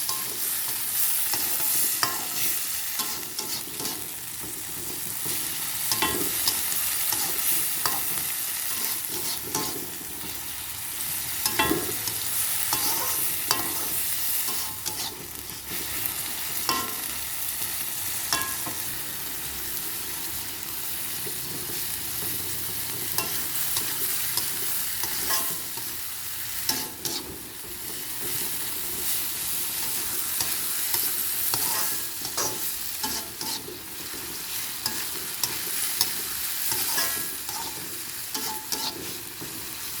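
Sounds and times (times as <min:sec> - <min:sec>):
vegetables sizzling in hot oil: 0:00.0 - 0:40.0
spatula scraping and knocking pan: 0:03.0 - 0:10.1, 0:29.8 - 0:39.6.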